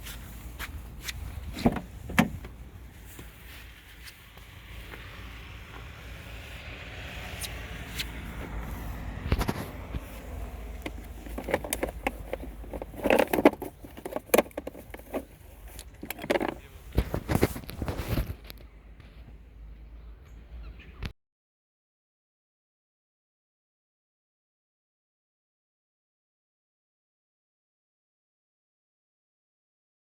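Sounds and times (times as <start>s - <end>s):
low car rumble: 0.0s - 21.1s
rattling knocks and scrapes: 1.4s - 3.2s, 9.3s - 18.5s.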